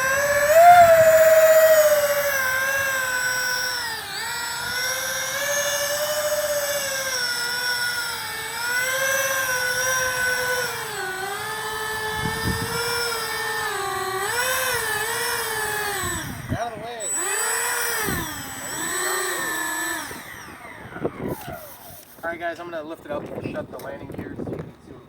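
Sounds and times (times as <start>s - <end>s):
electric ducted fans whining: 0.0s - 25.0s.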